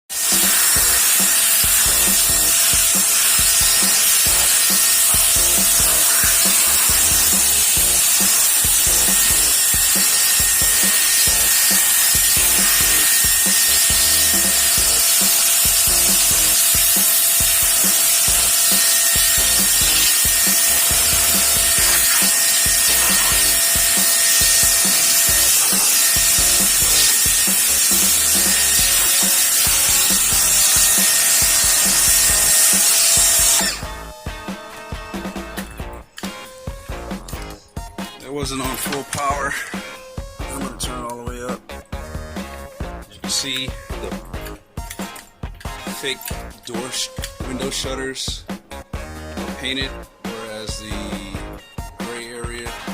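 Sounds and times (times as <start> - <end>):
pressure washer spraying hiss: 0.1 - 33.8.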